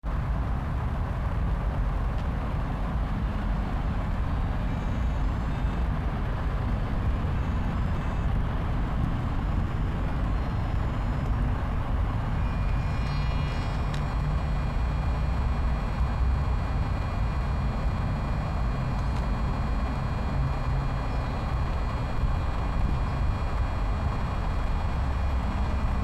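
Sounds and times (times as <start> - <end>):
street traffic rumble: 0.0 - 26.0
faint high-pitched tone: 7.1 - 17.6.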